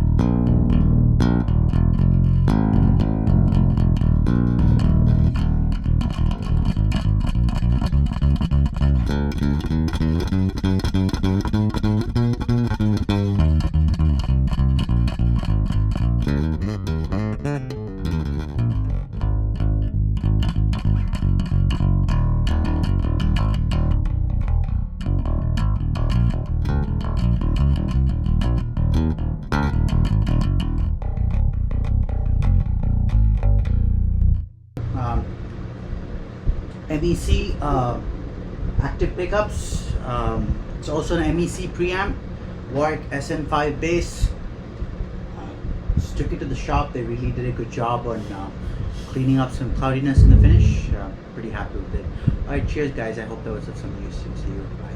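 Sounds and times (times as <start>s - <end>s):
electric bass playing quick notes: 0.0s - 34.8s, 50.2s - 51.1s.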